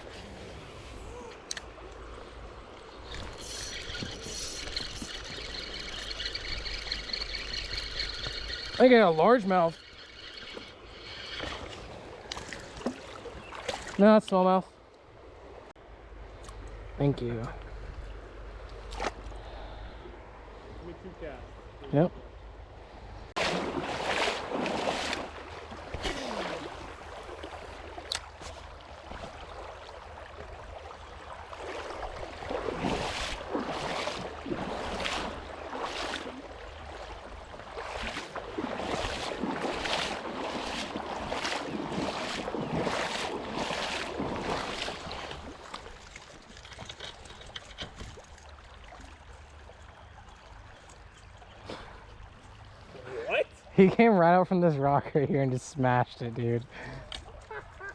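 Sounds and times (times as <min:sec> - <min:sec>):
water splashes: 0:00.0 - 0:14.6, 0:23.4 - 0:54.4
river water flowing: 0:00.0 - 0:57.9.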